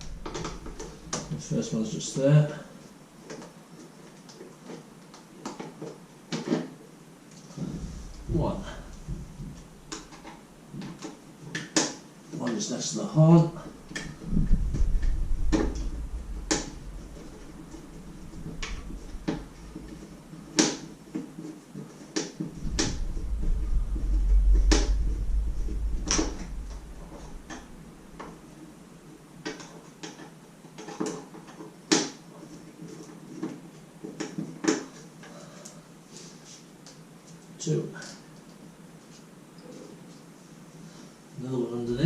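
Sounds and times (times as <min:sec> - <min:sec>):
low rumble: 0:00.0 - 0:01.5, 0:07.6 - 0:10.4, 0:13.4 - 0:20.4, 0:22.5 - 0:28.6.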